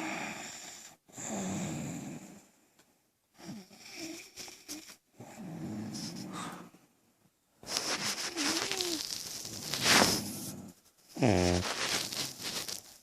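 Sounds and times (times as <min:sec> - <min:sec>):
rasping snores: 0:00.0 - 0:02.5, 0:03.4 - 0:06.8, 0:09.7 - 0:11.9.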